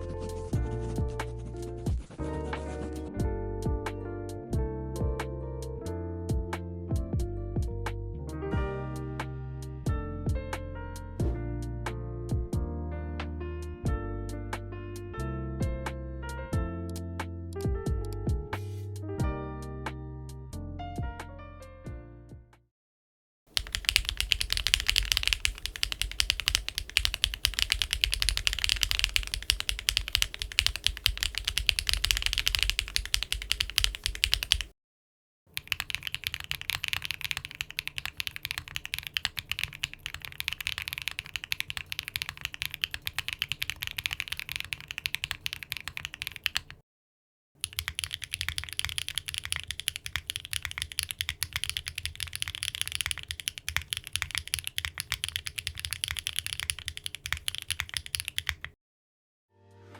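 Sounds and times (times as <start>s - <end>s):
mechanical keyboard typing: 23.5s - 34.7s, 35.6s - 46.8s, 47.6s - 58.8s.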